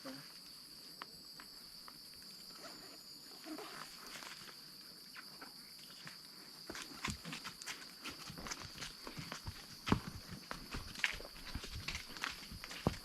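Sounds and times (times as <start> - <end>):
insects droning: 0.0 - 13.0
horse hoof steps: 6.7 - 13.0.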